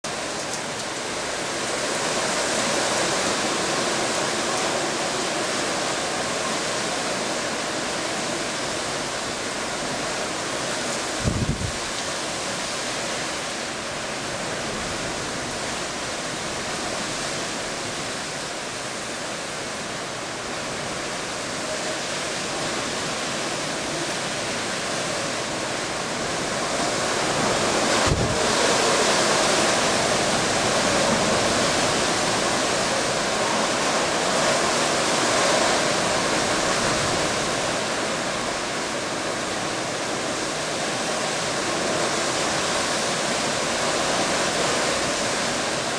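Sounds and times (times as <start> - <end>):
storm wind roaring: 0.1 - 45.9.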